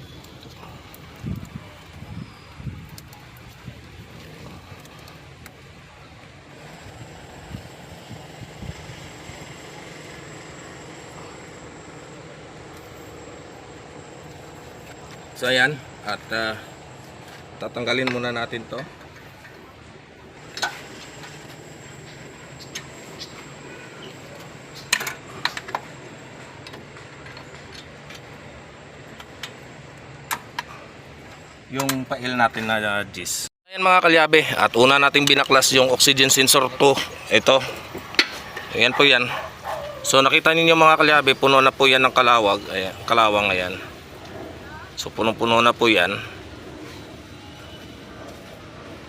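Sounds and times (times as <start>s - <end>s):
mechanical background hum: 0.0s - 33.5s, 34.3s - 49.0s.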